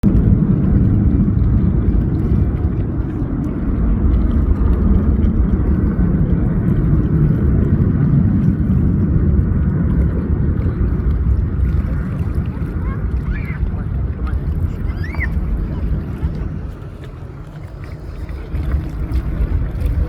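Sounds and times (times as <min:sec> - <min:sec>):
airliner engine rumble in cabin: 0:00.0 - 0:20.0.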